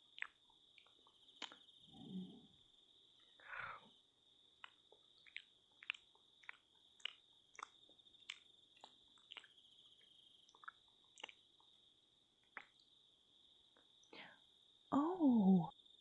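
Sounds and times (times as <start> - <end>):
wet mouth clicks and smacks: 0.1 - 1.6, 4.6 - 9.6, 10.5 - 11.7, 12.4 - 12.9.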